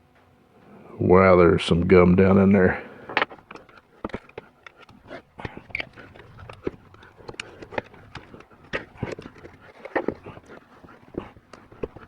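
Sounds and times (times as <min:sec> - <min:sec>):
metal and plastic parts clicking: 0:03.2 - 0:12.0.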